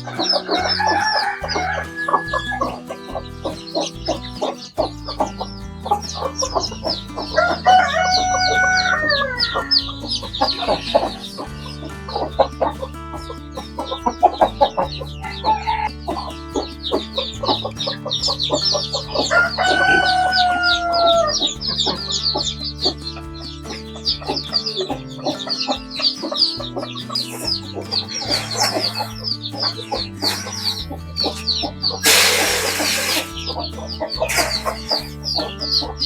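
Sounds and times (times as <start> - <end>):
background music: 0.0 - 36.0
chickens clucking: 0.0 - 36.0
rapid high chirping: 0.0 - 36.0
rooster crowing: 0.1 - 2.7, 7.4 - 9.9, 19.3 - 21.5.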